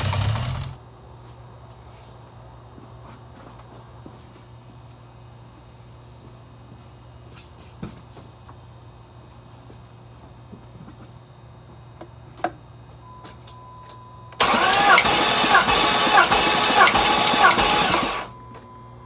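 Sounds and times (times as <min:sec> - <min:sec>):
engine starter cranking whine: 0:00.0 - 0:00.8, 0:14.4 - 0:18.4.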